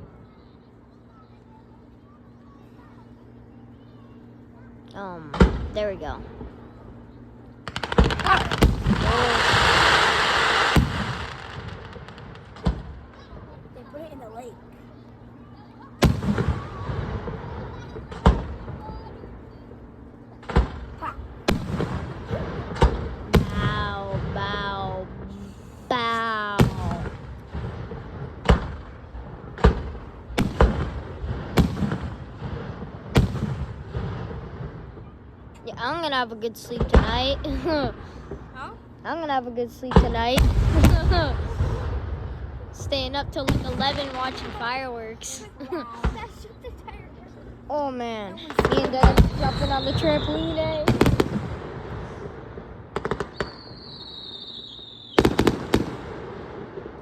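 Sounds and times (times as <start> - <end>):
fireworks bursting with echo: 7.6 - 13.4, 15.9 - 19.4, 20.3 - 35.2, 39.9 - 46.7, 48.4 - 57.0
high firework whistle: 48.6 - 51.0, 53.0 - 55.5.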